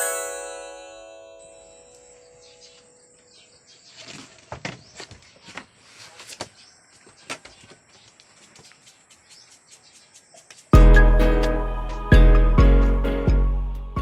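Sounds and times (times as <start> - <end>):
loud piano-like music: 10.8 - 14.0.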